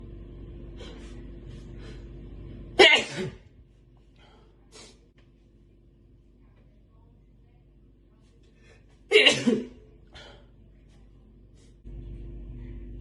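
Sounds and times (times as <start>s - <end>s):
man sneezing: 2.8s - 3.4s, 9.1s - 9.7s.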